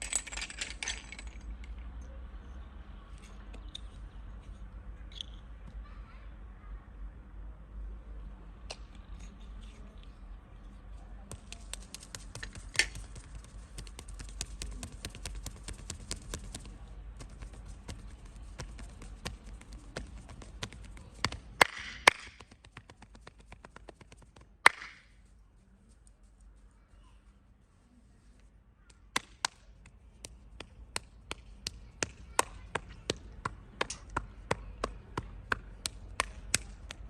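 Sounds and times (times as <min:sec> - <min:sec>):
light taps and clicks of hands: 0:11.3 - 0:21.5, 0:28.9 - 0:37.0.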